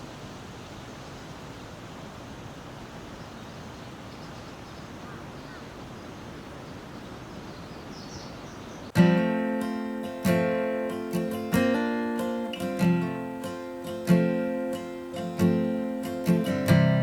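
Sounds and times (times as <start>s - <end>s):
outdoor hiss: 0.0s - 17.0s
faint bird chirps: 3.1s - 9.0s
strummed acoustic guitar: 9.0s - 17.0s.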